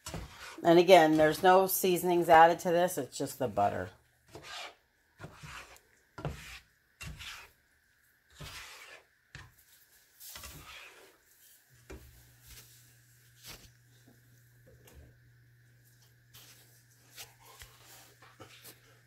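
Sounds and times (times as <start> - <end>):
spatula scraping frying pan: 0.0 - 1.8, 4.2 - 7.7, 8.3 - 9.6, 10.2 - 11.2.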